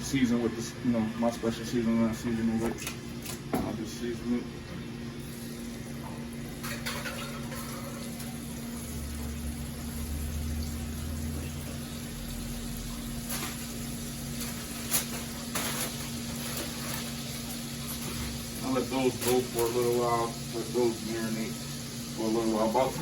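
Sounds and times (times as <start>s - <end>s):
shrimp sizzling in a pan: 6.6s - 23.0s.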